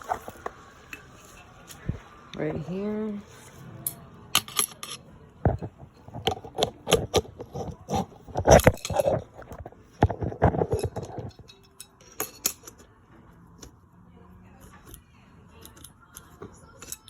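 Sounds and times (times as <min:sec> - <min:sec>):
metal parts clinking and rattling: 0:03.8 - 0:12.8.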